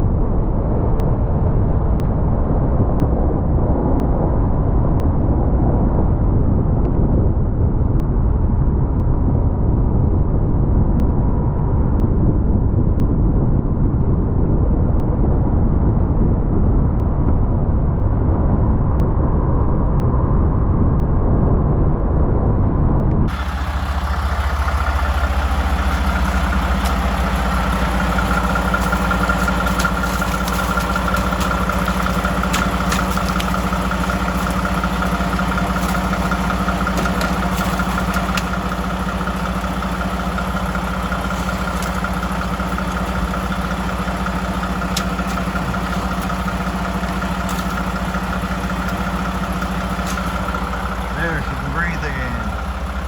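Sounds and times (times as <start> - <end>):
engine hum with high whine: 0.0 - 53.0
truck engine rumbling: 23.3 - 53.0.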